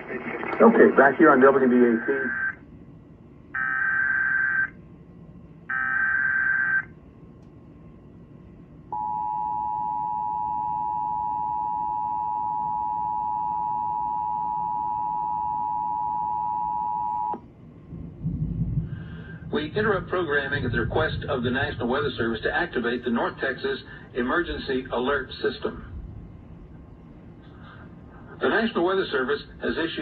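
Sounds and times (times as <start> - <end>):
warbling data tone bursts: 1.8 - 2.6, 3.6 - 4.8, 5.7 - 6.9.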